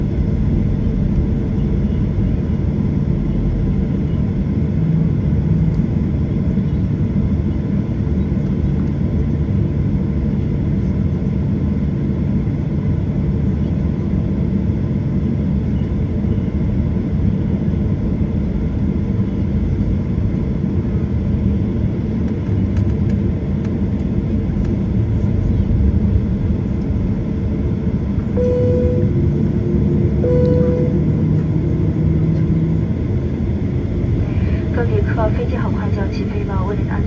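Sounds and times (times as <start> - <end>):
aircraft cabin rumble: 0.0 - 37.0
short beeps: 28.3 - 29.3, 30.2 - 31.2.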